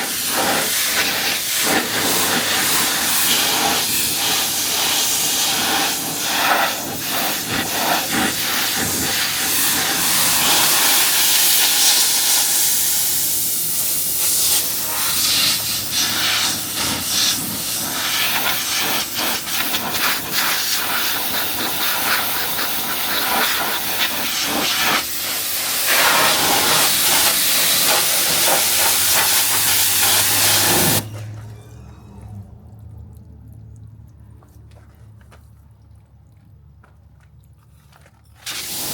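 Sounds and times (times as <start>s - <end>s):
pressure washer jet hissing: 0.0s - 31.3s, 38.4s - 38.9s
low hum: 31.0s - 36.7s.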